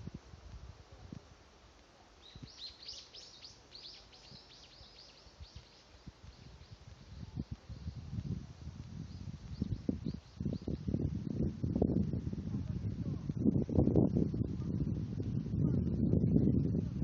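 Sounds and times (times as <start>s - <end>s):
small bird singing: 2.2s - 8.2s, 9.0s - 11.0s.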